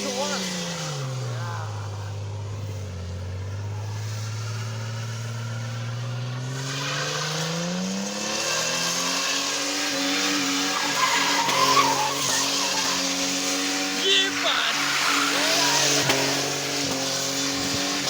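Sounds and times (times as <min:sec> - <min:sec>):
car engine revving: 0:00.0 - 0:18.0
tyres squealing: 0:10.1 - 0:16.7.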